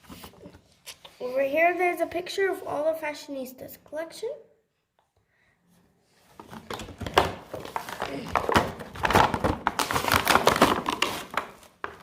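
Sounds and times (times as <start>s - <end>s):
packaging crinkling: 6.4s - 12.0s.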